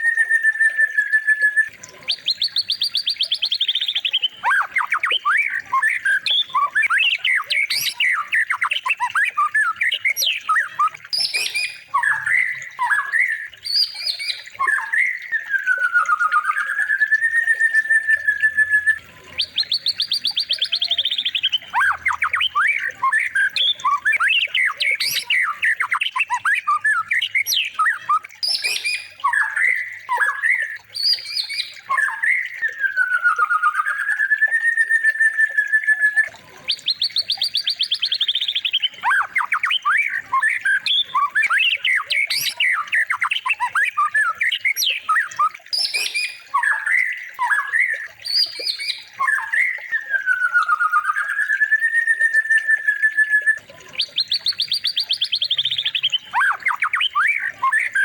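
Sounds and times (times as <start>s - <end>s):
recorded songbird whistles and trills: 0.0s - 58.0s.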